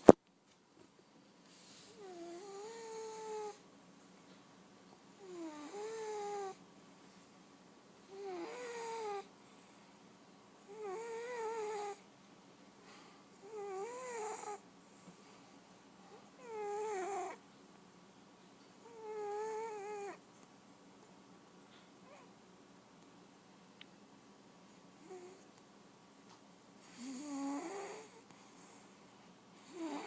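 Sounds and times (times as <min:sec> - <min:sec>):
cat snoring with whistle: 0:02.0 - 0:03.6, 0:05.2 - 0:06.6, 0:08.1 - 0:09.3, 0:10.7 - 0:12.0, 0:13.4 - 0:14.6, 0:16.4 - 0:17.4, 0:18.9 - 0:20.2, 0:26.8 - 0:28.2, 0:29.6 - 0:30.0.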